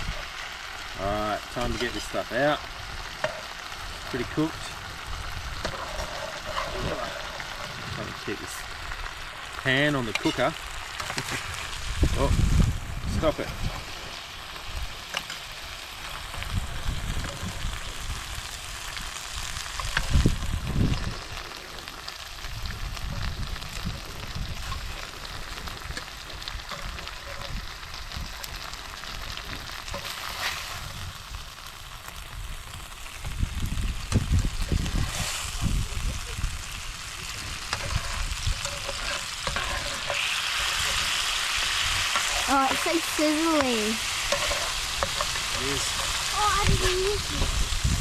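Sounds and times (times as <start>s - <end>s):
fish sizzling in oil: 0.0s - 48.0s.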